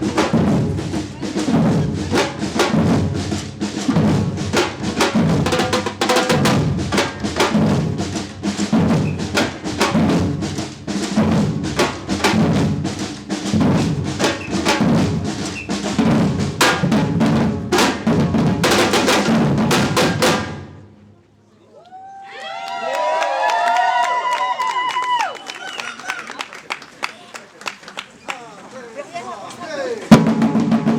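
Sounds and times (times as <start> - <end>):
bass drums pulsing: 0.0 - 20.8
rapid snare strokes: 1.4 - 20.6
crowd cheering: 21.6 - 30.1.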